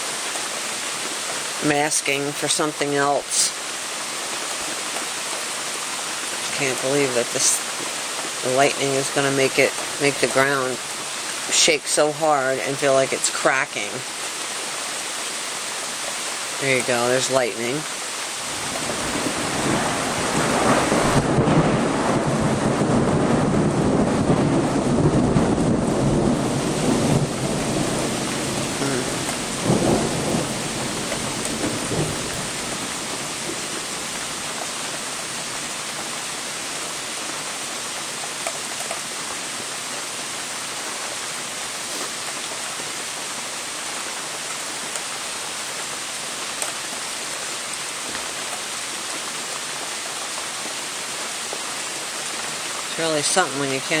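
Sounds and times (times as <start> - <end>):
steady rain: 0.0 - 54.0
thunder rumbling: 18.5 - 35.7
sharp thunder cracks: 18.6 - 32.6.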